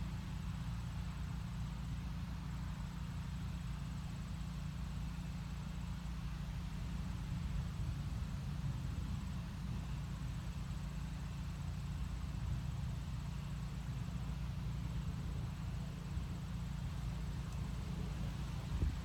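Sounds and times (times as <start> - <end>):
wind buffeting microphone: 18.0 - 19.0.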